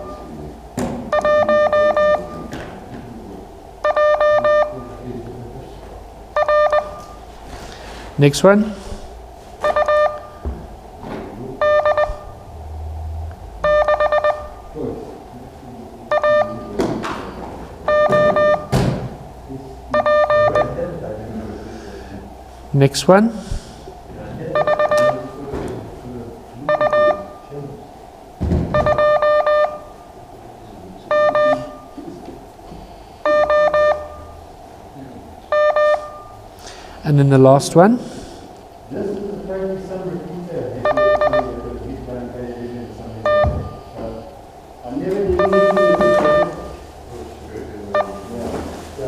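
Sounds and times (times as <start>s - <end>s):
morse code beeps: 0.0s - 0.4s, 1.1s - 2.5s, 3.8s - 5.1s, 6.3s - 7.3s, 9.6s - 10.5s, 11.6s - 12.6s, 13.6s - 14.8s, 16.1s - 16.8s, 17.8s - 18.8s, 19.9s - 20.8s, 24.5s - 25.4s, 26.7s - 27.6s, 28.7s - 30.1s, 31.1s - 32.0s, 33.2s - 34.5s, 35.5s - 36.5s, 40.8s - 41.8s, 43.2s - 44.0s, 45.3s - 46.9s, 47.9s - 48.4s.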